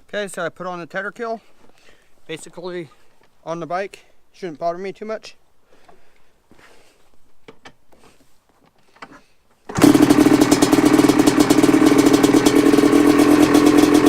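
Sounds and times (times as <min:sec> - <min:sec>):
two-stroke engine fast idle: 0:09.7 - 0:14.0.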